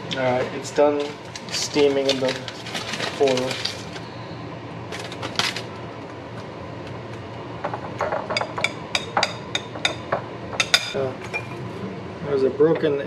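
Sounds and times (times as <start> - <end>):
dishes and utensils clinking: 10.6 - 11.6.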